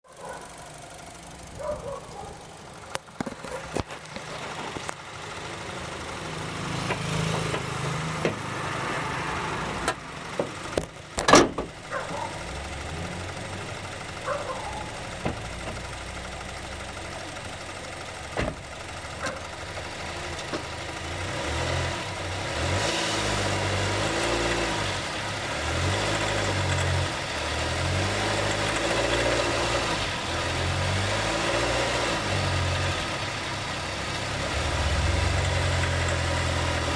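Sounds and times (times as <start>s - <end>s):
car engine running: 0.0s - 36.9s
sharp engine knocks: 6.8s - 8.6s, 9.9s - 12.2s, 14.3s - 15.9s, 18.3s - 19.4s.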